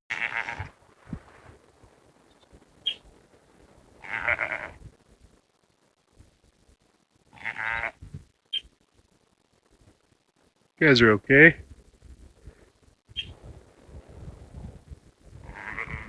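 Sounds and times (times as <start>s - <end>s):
sheep bleating: 0.1s - 0.8s, 4.0s - 4.8s, 7.3s - 8.0s, 15.4s - 16.0s.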